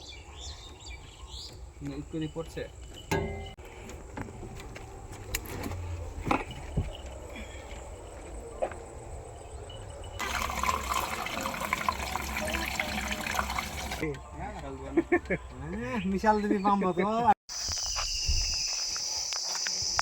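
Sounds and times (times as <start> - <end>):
liquid pouring and splashing: 10.2 - 14.0.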